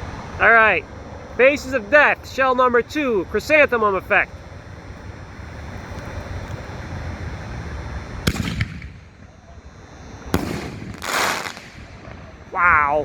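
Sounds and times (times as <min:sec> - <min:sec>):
firework mortar bang: 0:08.2 - 0:09.3, 0:10.3 - 0:12.5
firework shell bursting: 0:08.2 - 0:09.4, 0:10.2 - 0:12.6.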